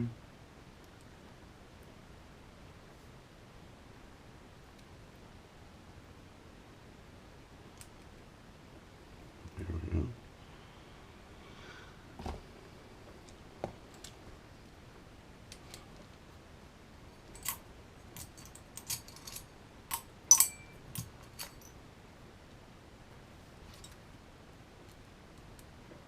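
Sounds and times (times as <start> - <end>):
metal and plastic parts clicking: 18.2 - 21.7.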